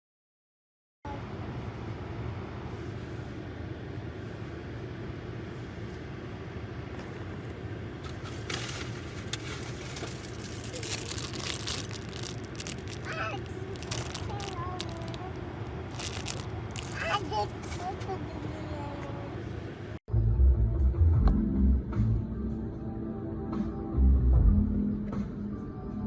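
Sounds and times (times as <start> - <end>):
low background rumble: 1.1 - 26.0.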